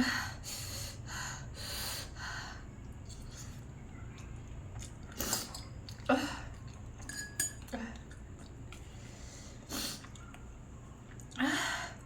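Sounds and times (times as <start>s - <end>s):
woman breathing hard: 0.0s - 2.7s.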